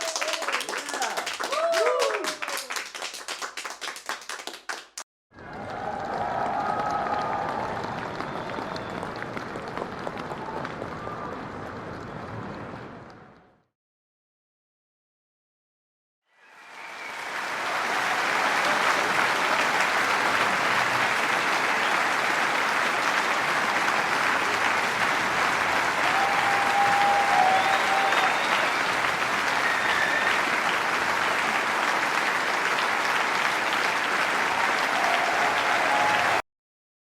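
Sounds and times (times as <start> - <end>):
large crowd applauding: 0.0 - 13.5, 16.4 - 36.4.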